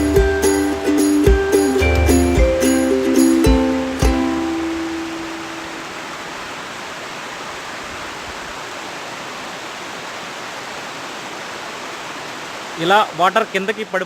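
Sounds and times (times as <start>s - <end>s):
held musical note: 0.0s - 6.0s
waterfall rushing: 0.0s - 14.0s.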